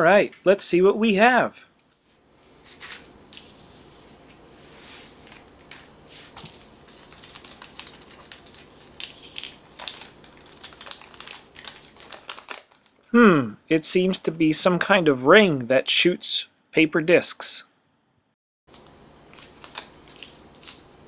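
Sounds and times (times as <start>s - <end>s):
plastic and paper wrapping crinkling: 1.8s - 13.1s, 18.7s - 21.0s.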